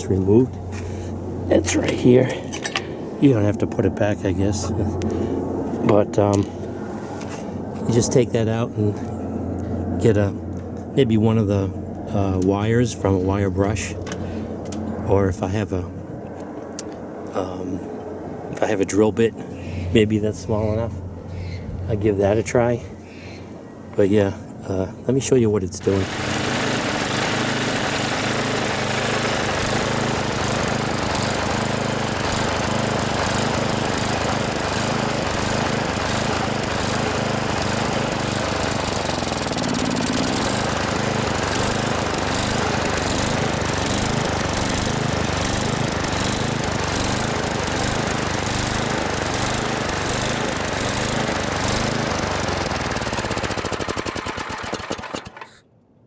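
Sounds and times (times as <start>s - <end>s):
snowblower engine surging: 25.8s - 55.6s.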